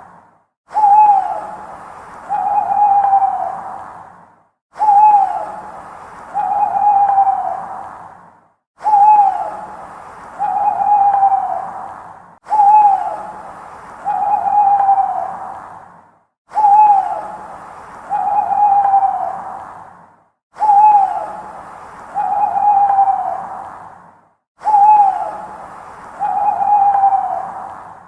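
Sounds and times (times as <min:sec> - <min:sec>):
owl hooting: 0:00.7 - 0:03.8, 0:04.8 - 0:07.9, 0:08.8 - 0:09.8, 0:10.4 - 0:11.9, 0:12.5 - 0:15.6, 0:16.5 - 0:19.6, 0:20.6 - 0:23.6, 0:24.6 - 0:28.0.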